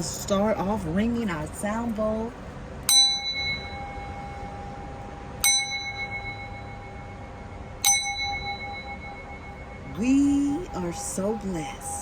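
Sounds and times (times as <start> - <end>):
singing bowl ringing: 2.9 - 12.0
singing bowl struck: 2.9 - 12.0.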